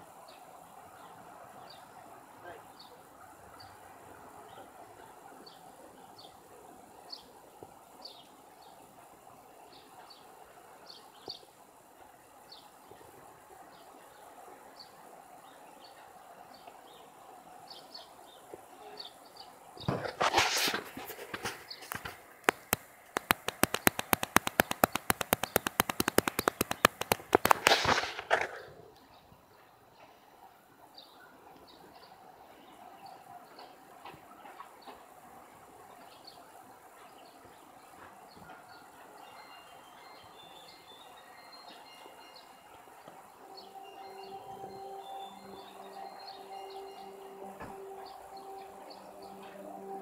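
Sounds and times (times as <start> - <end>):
steady background hum: 0.0 - 50.0
bird chirping: 13.6 - 28.3, 35.9 - 50.0
rustling: 19.8 - 28.8
rapid sharp clicks: 20.2 - 28.5.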